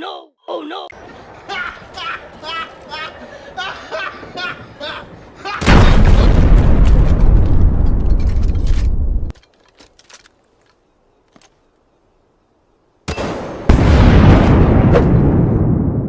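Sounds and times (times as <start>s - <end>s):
loud rumbling blast: 5.6s - 9.3s, 13.7s - 16.0s.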